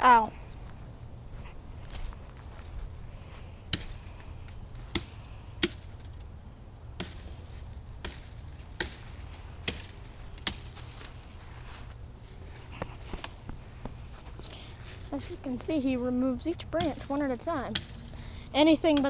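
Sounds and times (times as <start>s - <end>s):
axe chopping wood: 4.9s - 6.0s, 8.0s - 10.7s, 17.7s - 18.0s.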